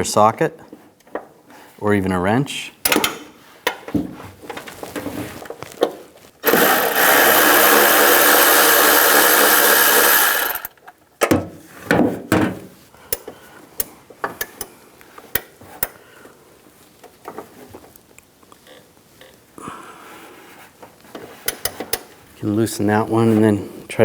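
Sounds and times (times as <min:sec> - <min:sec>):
power tool spinning a socket: 0:06.4 - 0:10.8.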